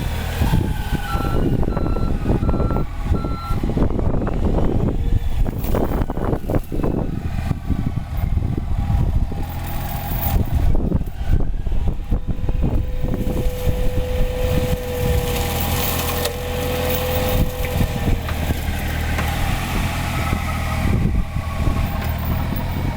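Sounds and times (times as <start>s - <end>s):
excavator diesel engine running: 0.0s - 22.9s
hydraulic mulcher working: 0.0s - 22.9s
knocks and crackles: 11.9s - 20.5s.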